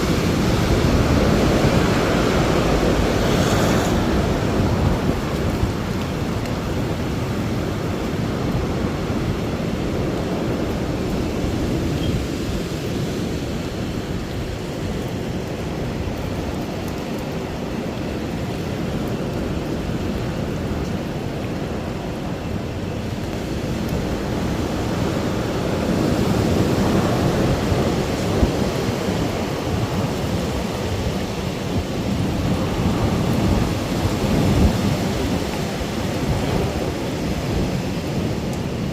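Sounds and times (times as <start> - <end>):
strong wind blowing: 0.0 - 38.9.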